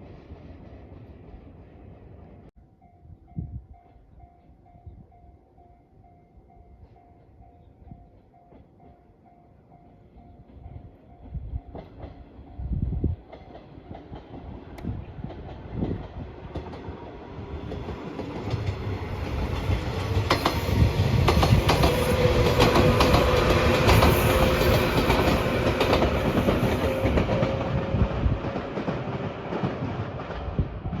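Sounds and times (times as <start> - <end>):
train wheels clacking over rail joints: 17.7 - 30.5.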